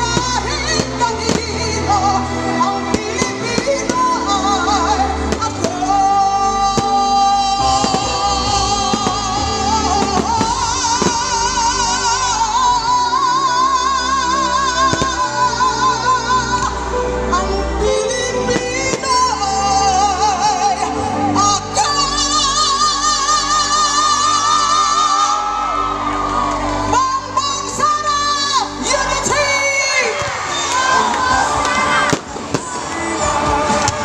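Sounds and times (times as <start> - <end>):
person singing with vibrato: 0.0 - 25.5.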